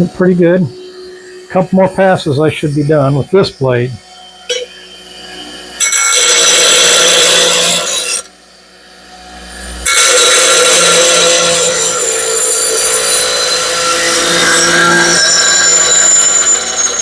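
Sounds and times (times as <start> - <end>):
motor hum: 0.0 - 5.9
blade grinding on grinding wheel: 0.0 - 17.0.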